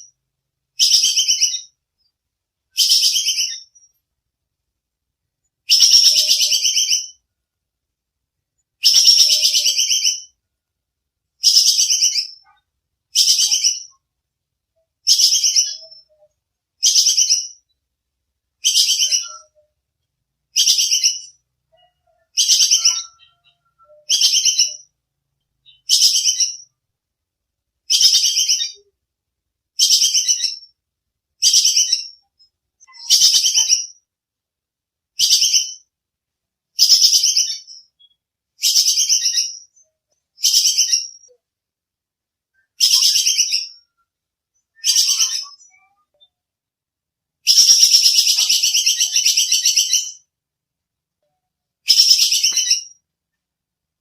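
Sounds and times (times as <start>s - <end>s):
squirrel chattering call: 8.8s - 10.3s, 47.4s - 50.2s.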